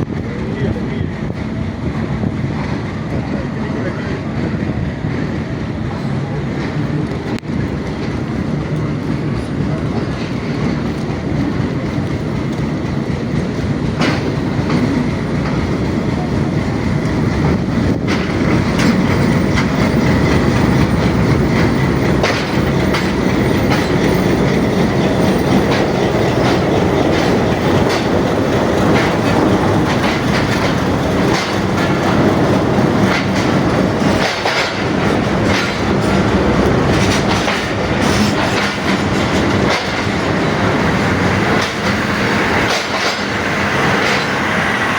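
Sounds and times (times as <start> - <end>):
train rumbling: 0.0 - 44.9
wheels clacking over rail joints: 0.0 - 44.9.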